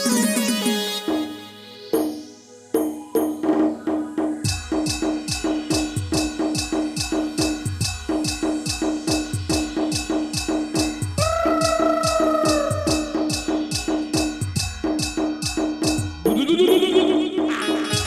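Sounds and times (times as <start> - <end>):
sharp clicking percussion: 2.8 - 18.0
deep bass drum thumps: 4.4 - 16.4.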